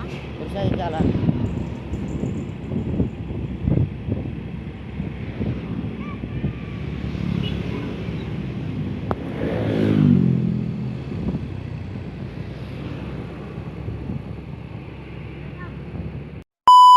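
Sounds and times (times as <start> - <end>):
road traffic noise: 0.0 - 16.9
vehicle passing close by: 6.7 - 16.2.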